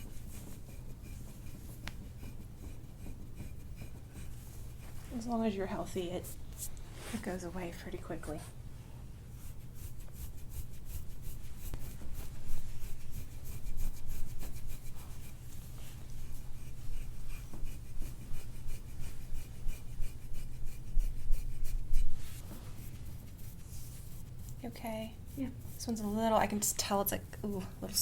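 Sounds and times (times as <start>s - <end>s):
hands rubbing oiled skin: 9.4s - 27.0s.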